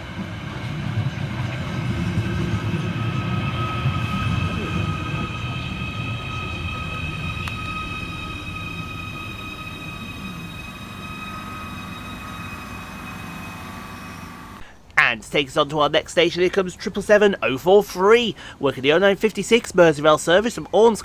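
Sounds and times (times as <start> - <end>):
electric train whine and rumble: 0.0 - 14.7.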